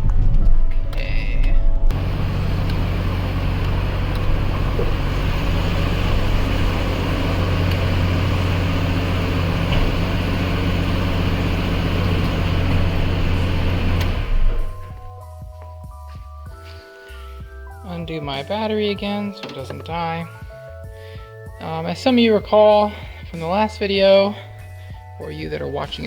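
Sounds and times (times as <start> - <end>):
car engine running: 1.8 - 15.1.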